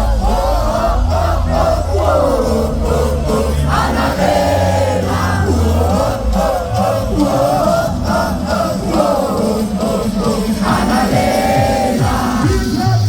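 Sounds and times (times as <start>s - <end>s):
heavy bass beat: 0.0s - 13.0s
party music over loudspeakers: 0.0s - 13.0s
person singing: 0.0s - 13.0s.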